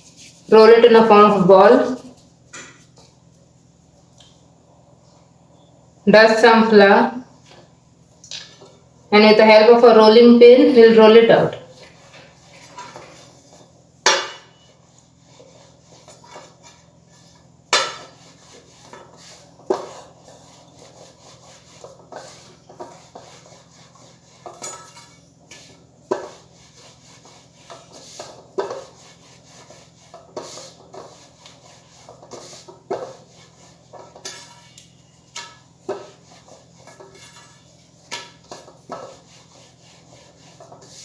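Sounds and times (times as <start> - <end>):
rolling pin rubbing dough: 10.1 - 41.0
rolling pin knocking work surface: 17.7 - 18.3.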